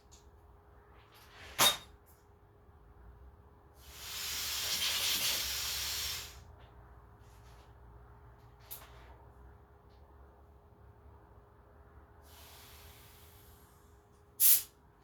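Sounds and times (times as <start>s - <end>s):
compressed air blow gun hissing: 3.9s - 6.4s, 12.3s - 13.5s.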